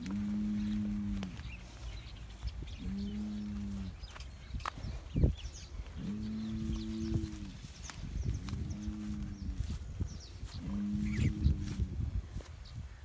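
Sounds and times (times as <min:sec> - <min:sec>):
cattle mooing: 0:00.0 - 0:01.5, 0:02.8 - 0:04.0, 0:10.6 - 0:11.7.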